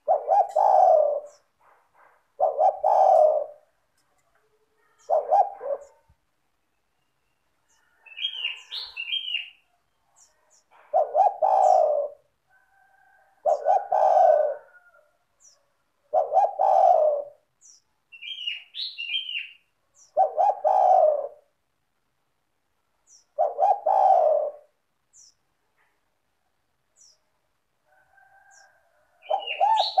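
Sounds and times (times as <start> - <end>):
bird chirping: 0.0 - 3.5, 4.2 - 12.2, 15.4 - 21.0, 23.0 - 24.2, 25.0 - 25.9, 26.8 - 27.4, 28.5 - 30.0
dove cooing: 0.0 - 3.8, 4.8 - 6.1, 7.9 - 9.6, 10.4 - 15.1, 16.1 - 17.5, 18.5 - 21.6, 23.3 - 24.8, 28.4 - 30.0.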